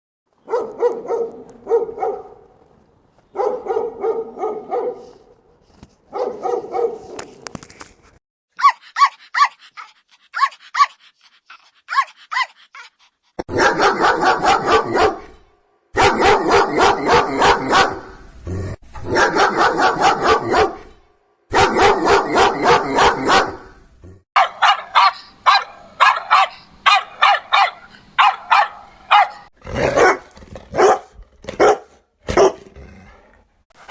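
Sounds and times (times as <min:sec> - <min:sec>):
dogs barking: 0:00.4 - 0:07.9, 0:13.5 - 0:15.3, 0:16.0 - 0:18.0, 0:19.1 - 0:20.8, 0:21.5 - 0:23.6, 0:24.4 - 0:32.7.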